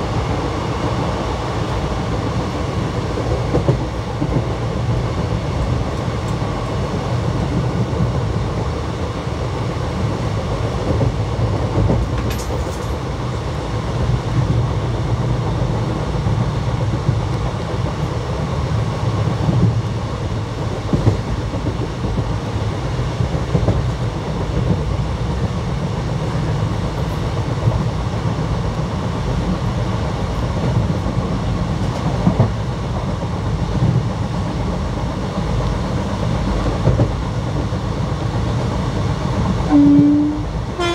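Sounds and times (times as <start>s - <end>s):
train wheels rumbling on rail: 0.0s - 40.9s
light clickety-clack: 3.0s - 9.1s, 10.4s - 13.1s, 14.3s - 19.9s, 20.6s - 40.0s.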